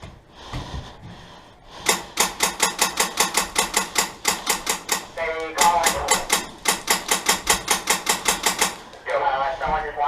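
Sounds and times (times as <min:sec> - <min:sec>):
airsoft gun rapid firing: 0:01.8 - 0:09.0.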